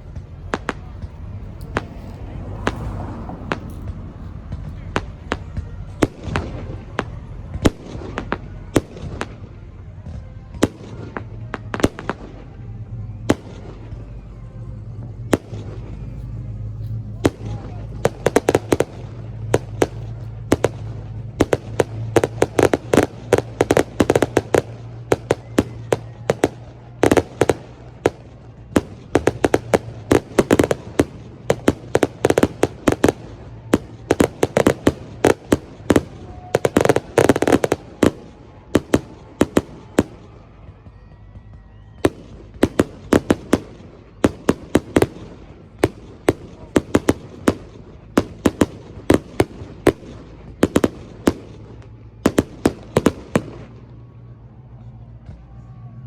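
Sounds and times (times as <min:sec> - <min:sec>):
fireworks bangs and crackles: 0:00.0 - 0:56.0.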